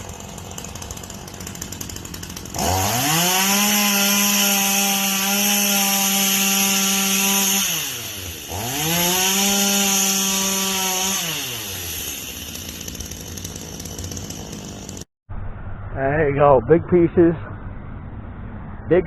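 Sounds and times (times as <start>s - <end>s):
chainsaw engine revving: 0.0s - 15.1s.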